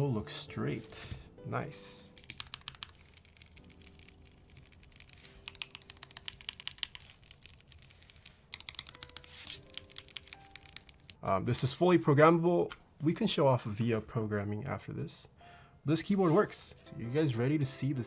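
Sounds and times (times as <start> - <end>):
mechanical keyboard key clacks: 2.2 - 11.2.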